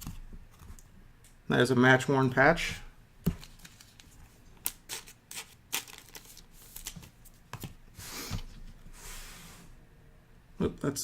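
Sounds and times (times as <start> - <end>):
trading cards clicking and rustling: 3.2 - 7.8.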